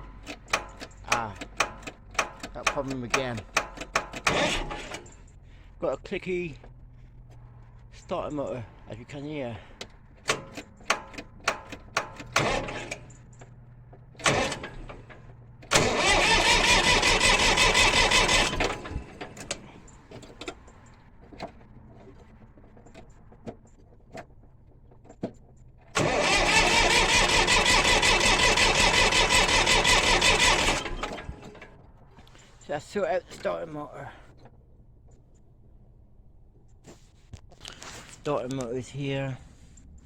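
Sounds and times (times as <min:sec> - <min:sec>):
starter motor clicks: 0:00.2 - 0:05.2, 0:09.8 - 0:20.7, 0:25.9 - 0:32.4
starter motor cranking: 0:00.2 - 0:05.2, 0:11.6 - 0:13.3, 0:14.2 - 0:19.8, 0:25.9 - 0:32.4.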